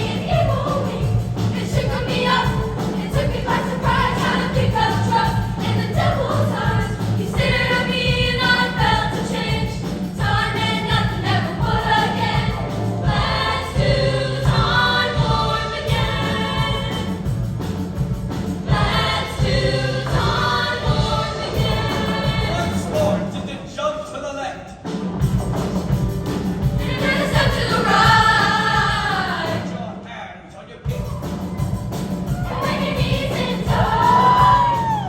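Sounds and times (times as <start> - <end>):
girls' choir singing: 0.0 - 17.4, 18.6 - 23.3, 26.8 - 29.8, 32.3 - 35.0.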